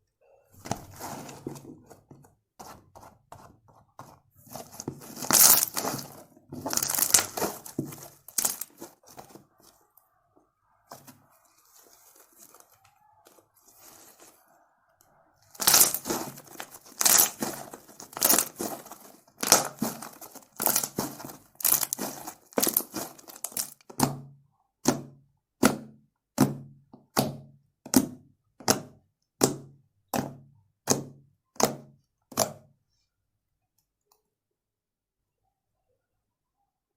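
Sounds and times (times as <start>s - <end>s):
slime squishing and popping: 5.1s - 8.9s, 15.5s - 23.8s.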